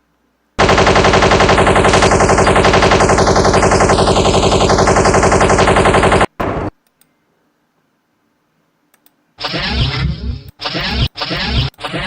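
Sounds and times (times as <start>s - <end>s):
machine-gun automatic fire: 0.6s - 6.7s.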